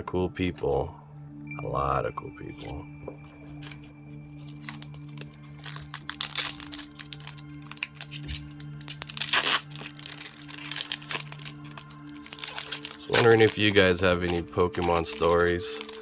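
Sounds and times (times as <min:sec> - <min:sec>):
foil wrappers crinkling and tearing: 0:03.6 - 0:16.0.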